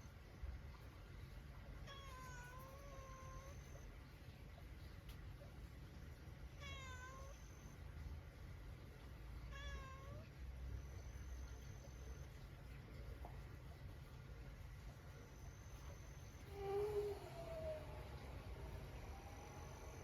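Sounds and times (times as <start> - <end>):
low background rumble: 0.0 - 20.0
cat meowing: 1.8 - 3.7, 6.6 - 7.5, 9.5 - 10.3
faint high steady tone: 9.5 - 20.0.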